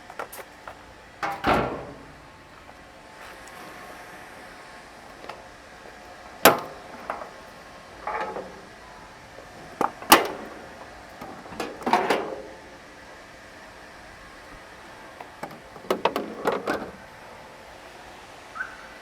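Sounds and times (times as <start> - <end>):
metal panel knocks and clicks: 1.2 - 2.4, 6.5 - 7.4, 8.0 - 8.7
metal rattles: 1.2 - 2.8, 6.4 - 8.9.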